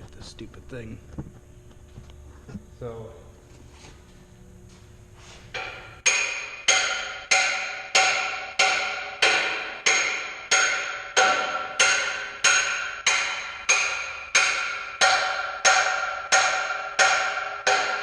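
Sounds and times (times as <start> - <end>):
hammer striking metal: 5.5 - 18.0.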